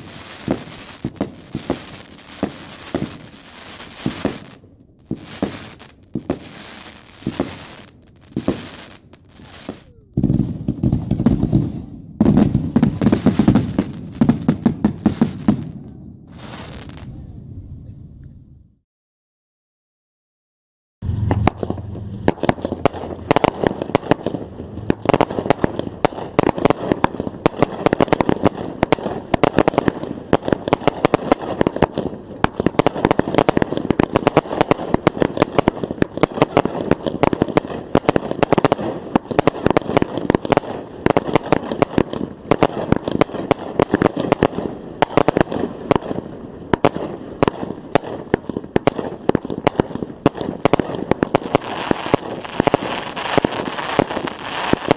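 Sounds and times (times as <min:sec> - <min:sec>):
fireworks bangs and crackles: 0:00.0 - 0:17.7, 0:21.0 - 0:54.9
deep firework boom: 0:21.0 - 0:27.6.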